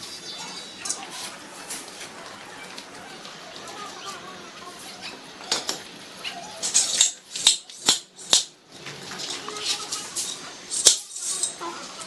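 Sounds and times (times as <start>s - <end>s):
metal tools clinking and knocking: 6.6s - 12.0s.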